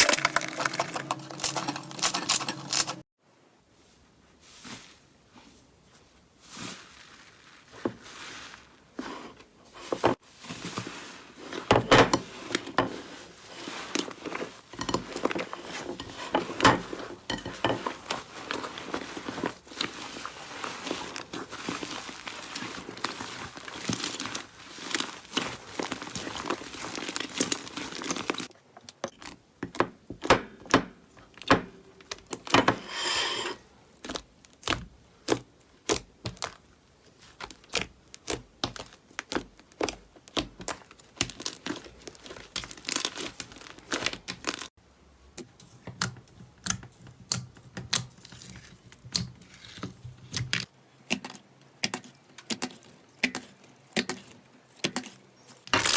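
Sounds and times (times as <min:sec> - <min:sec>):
slime crackling and popping: 0:37.4 - 0:44.7.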